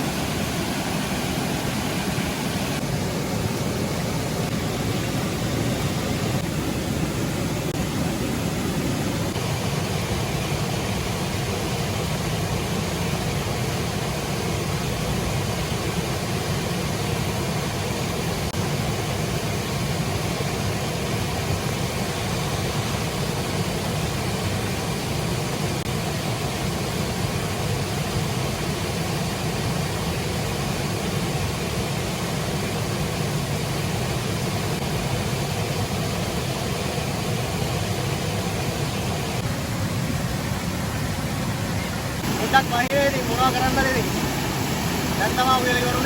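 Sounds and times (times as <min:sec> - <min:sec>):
steady rain falling: 0:42.0 - 0:46.0.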